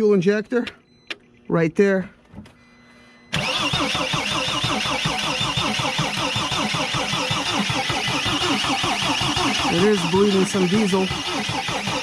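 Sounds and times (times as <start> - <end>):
diesel engine cranking: 3.3 - 12.0.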